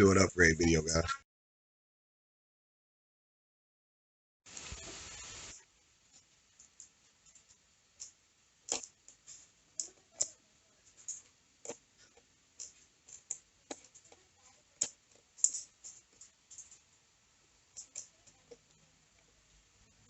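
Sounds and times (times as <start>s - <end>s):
brief hiss: 4.5s - 5.7s
computer parts clicking and tapping: 6.6s - 16.9s, 17.7s - 19.3s.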